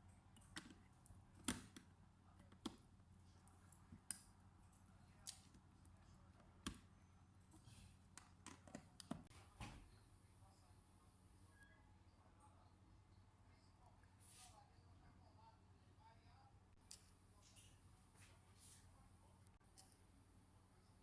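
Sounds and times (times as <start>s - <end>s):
faint low hum: 0.0s - 21.0s.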